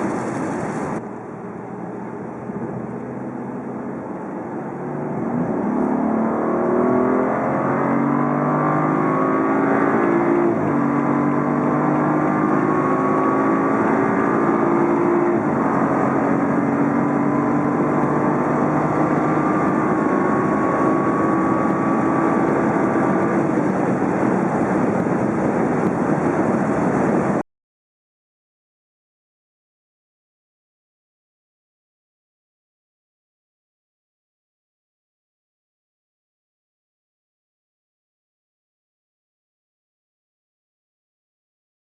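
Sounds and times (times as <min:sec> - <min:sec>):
car engine accelerating: 0:00.0 - 0:27.4.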